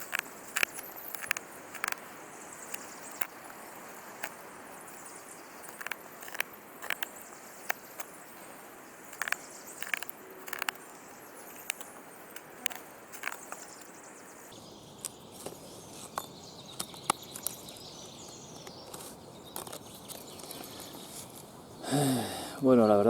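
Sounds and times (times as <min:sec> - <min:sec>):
knife scraping hard wood: 0:00.0 - 0:13.9
steady background hiss: 0:00.0 - 0:23.0.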